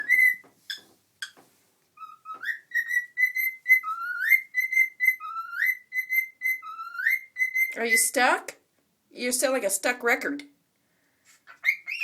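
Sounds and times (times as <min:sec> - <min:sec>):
bird chirps: 0:00.0 - 0:01.4, 0:02.0 - 0:07.9
cockatiel whistling: 0:00.0 - 0:01.4, 0:02.0 - 0:07.8, 0:11.5 - 0:12.0.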